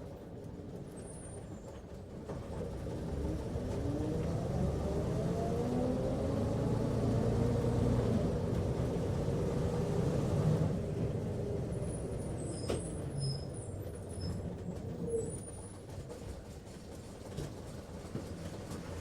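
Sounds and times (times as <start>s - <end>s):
bus engine and road rumble: 0.0s - 19.0s
brief high squeaks: 12.3s - 14.4s.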